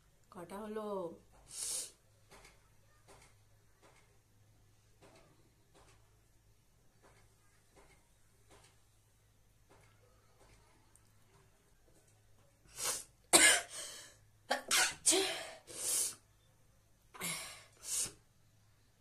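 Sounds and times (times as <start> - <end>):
person sneezing: 12.8 - 15.6.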